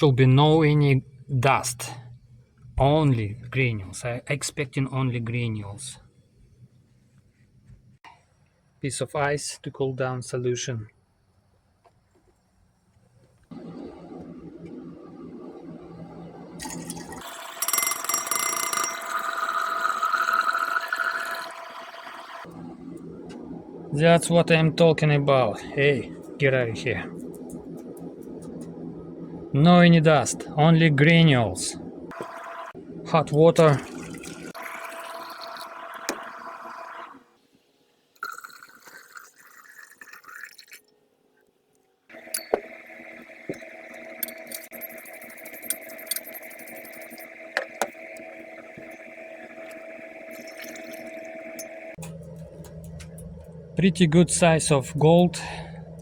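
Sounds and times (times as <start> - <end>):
low hum: 13.5 - 37.0, 42.1 - 56.0
glass clinking: 16.6 - 22.4, 42.2 - 42.8, 50.3 - 51.7
water pouring into glass beaker: 16.6 - 22.5, 32.2 - 37.3, 38.2 - 40.9, 42.1 - 52.0
hot liquid hissing: 19.1 - 22.5, 33.8 - 37.3.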